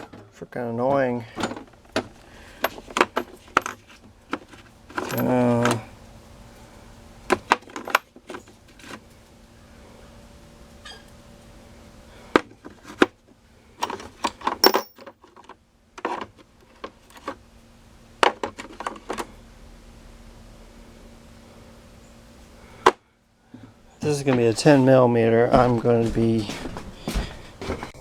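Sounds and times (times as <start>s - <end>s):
faint steady hum: 0.0s - 28.0s
steel tools clinking and rattling: 1.3s - 5.8s, 13.8s - 15.1s.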